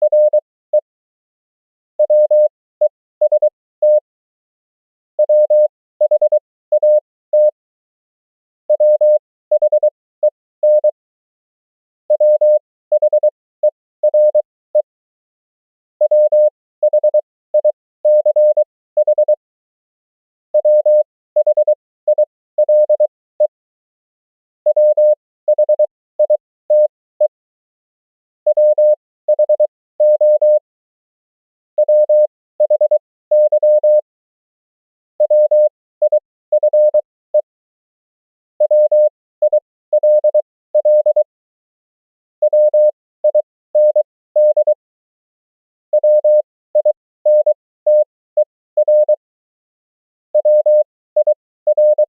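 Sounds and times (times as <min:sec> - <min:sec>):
morse code tone: 0:31.8 - 0:34.0, 0:35.2 - 0:37.0, 0:38.6 - 0:41.3, 0:42.5 - 0:44.8, 0:45.9 - 0:49.2, 0:50.4 - 0:52.0.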